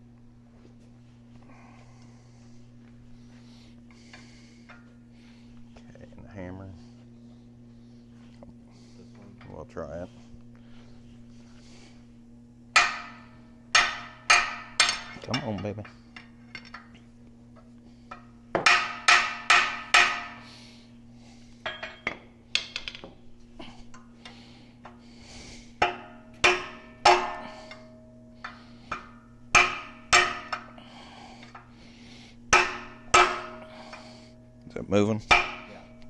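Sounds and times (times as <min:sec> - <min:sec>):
hammer on metal rod: 0:12.7 - 0:15.7, 0:18.6 - 0:20.4, 0:25.8 - 0:30.7, 0:32.5 - 0:33.7, 0:35.3 - 0:36.0.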